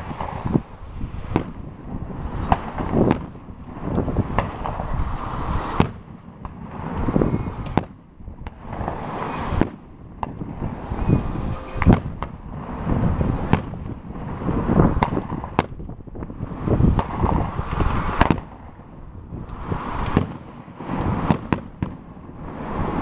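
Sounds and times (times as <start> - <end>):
fireworks bangs: 0.0 - 23.0
noisy background: 8.6 - 20.2.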